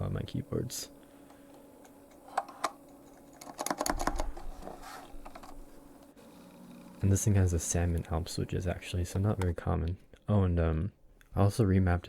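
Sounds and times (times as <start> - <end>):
keyboard typing: 2.1 - 4.4.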